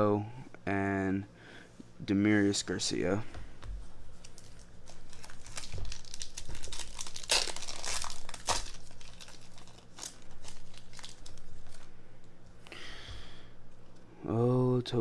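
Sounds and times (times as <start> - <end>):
foil wrapper tearing and crinkling: 4.2 - 11.9.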